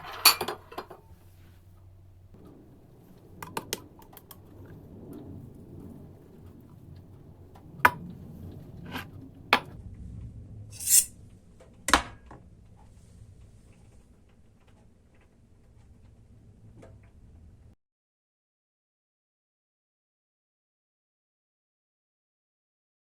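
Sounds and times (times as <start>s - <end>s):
kitchenware clinking on counter: 0.0s - 1.0s
short hissing scrape: 10.8s - 11.1s.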